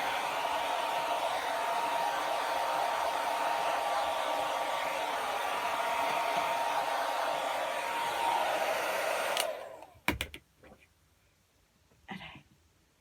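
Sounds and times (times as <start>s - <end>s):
hair dryer blowing: 0.0s - 10.0s
sharp clicks: 9.3s - 9.6s.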